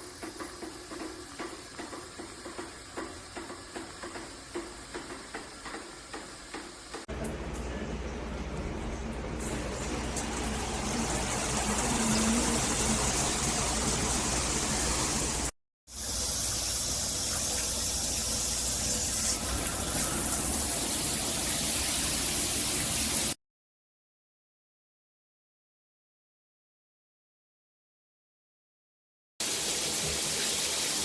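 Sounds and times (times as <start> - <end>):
water spraying from shower head: 9.4 - 23.4, 29.4 - 31.0.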